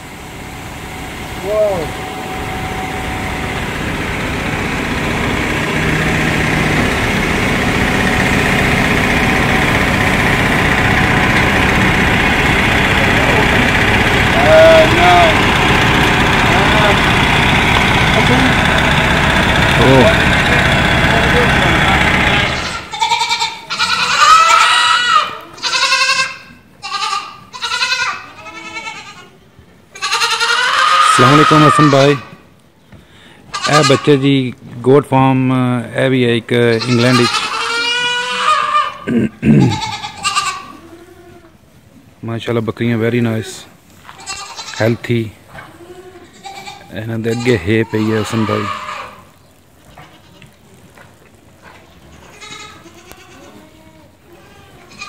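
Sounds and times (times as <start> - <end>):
engine running steadily: 0.0 - 22.9
goats bleating: 8.8 - 18.7, 19.6 - 32.4, 33.4 - 34.2, 36.6 - 41.6, 43.5 - 50.7, 51.8 - 55.0.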